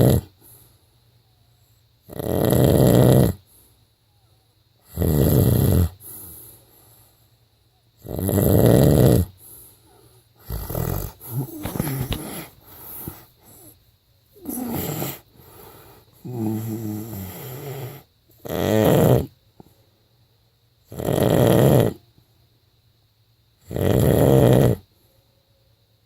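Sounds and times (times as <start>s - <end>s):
person snoring: 0.0s - 0.3s, 2.1s - 3.4s, 4.9s - 6.3s, 8.0s - 9.4s, 10.4s - 13.8s, 14.4s - 19.3s, 20.9s - 22.0s, 23.7s - 24.8s.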